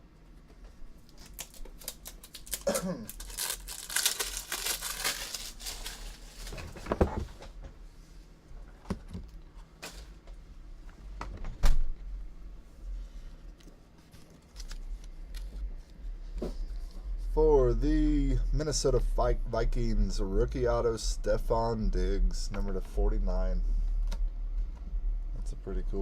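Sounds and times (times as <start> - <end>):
plastic packaging crinkling: 1.1 - 6.8.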